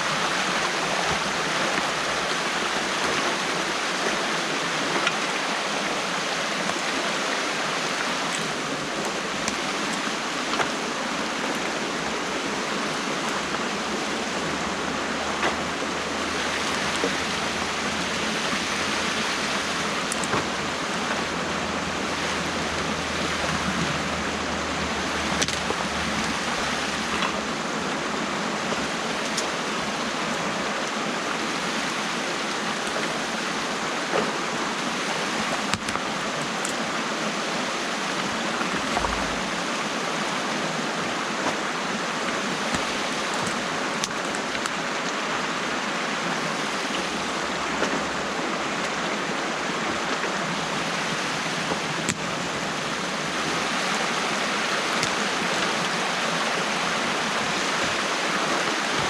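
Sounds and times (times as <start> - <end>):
water rushing through dam: 0.0 - 59.0
faint clicks and knocks: 38.6 - 39.6.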